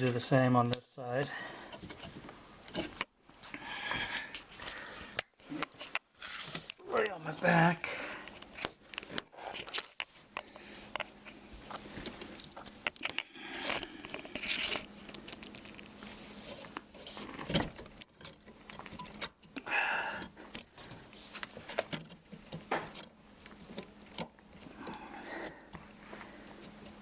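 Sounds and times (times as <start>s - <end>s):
light metallic clinks and scraping: 8.9s - 27.0s.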